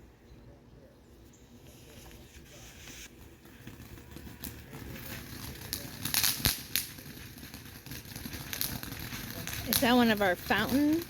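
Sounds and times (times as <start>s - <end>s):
firework crackling: 1.6s - 11.0s
firework hissing: 1.6s - 11.0s.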